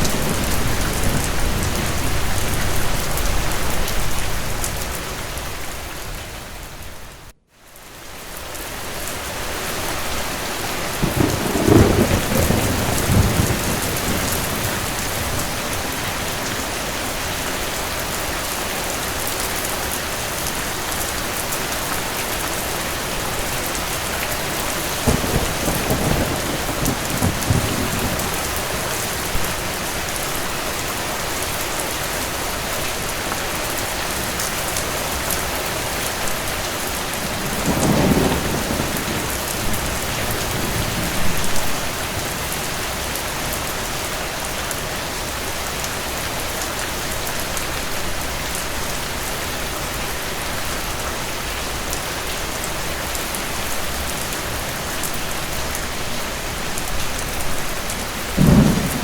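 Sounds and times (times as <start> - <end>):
distant thunder rumbles: 0.0 - 4.6, 11.0 - 16.5, 24.4 - 29.8, 36.3 - 42.3, 57.4 - 59.0
steady rain: 0.0 - 59.0.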